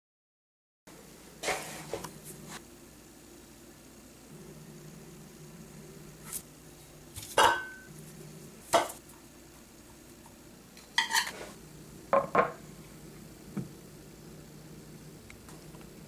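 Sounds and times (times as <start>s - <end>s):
dishes and utensils clinking: 7.3s - 7.9s, 10.9s - 11.4s.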